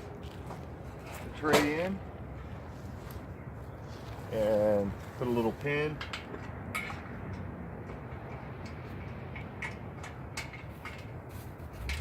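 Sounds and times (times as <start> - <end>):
light metal clicks and taps: 6.0 - 11.2.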